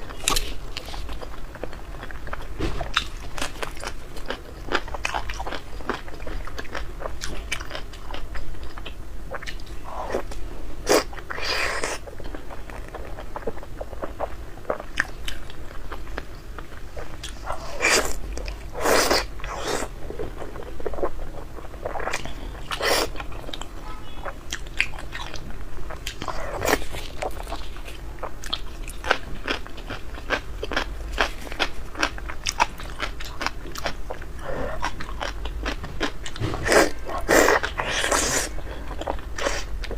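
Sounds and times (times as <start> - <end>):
person chewing: 0.0 - 39.9.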